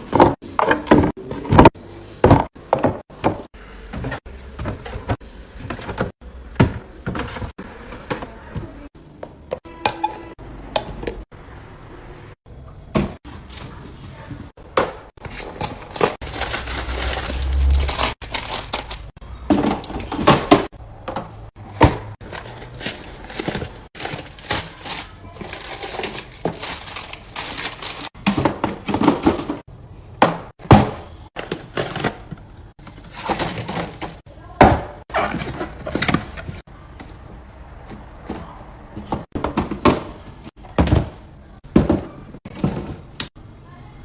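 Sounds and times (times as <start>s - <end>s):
food containers knocking and clattering: 0.0s - 11.3s, 12.7s - 43.4s.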